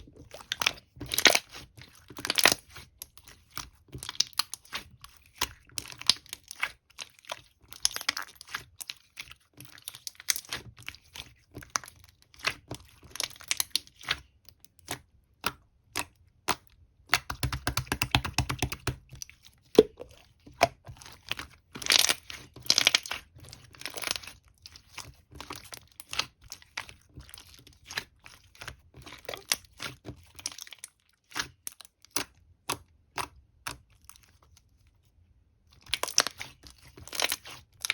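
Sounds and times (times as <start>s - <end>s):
slime popping and crackling: 19.8s - 20.8s, 21.8s - 24.3s.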